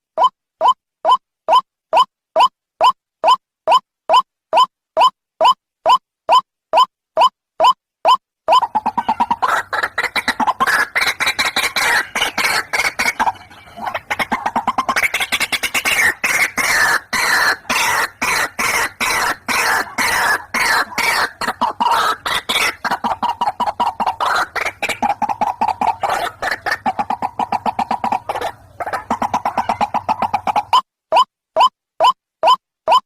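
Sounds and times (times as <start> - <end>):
waterhen calling: 8.5 - 30.8.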